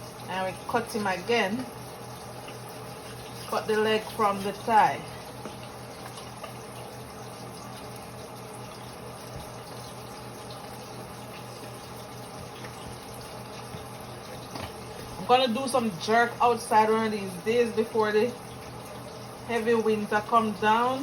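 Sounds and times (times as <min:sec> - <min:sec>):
tap running into sink: 0:08.7 - 0:15.2.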